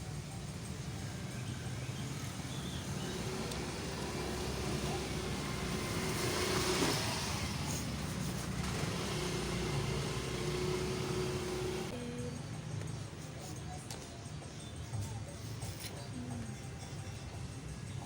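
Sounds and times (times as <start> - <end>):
road traffic rumbling: 0.0 - 18.0
vehicle passing close: 0.3 - 12.0.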